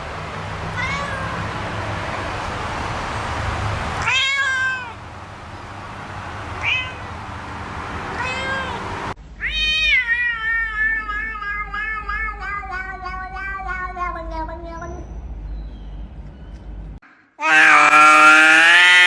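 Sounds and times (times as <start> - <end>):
cat meowing: 0.7 - 1.6, 4.0 - 5.0, 6.6 - 7.2, 8.2 - 8.8, 9.4 - 15.1, 17.4 - 19.0.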